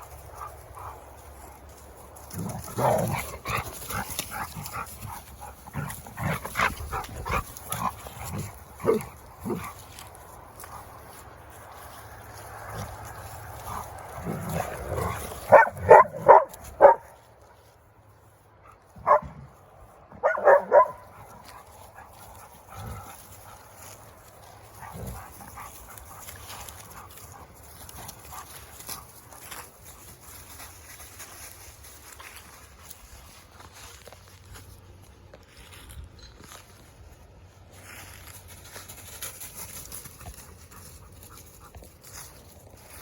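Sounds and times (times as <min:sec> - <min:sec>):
dog barking high-pitched: 0:15.5 - 0:17.1, 0:19.0 - 0:19.4, 0:20.2 - 0:21.1.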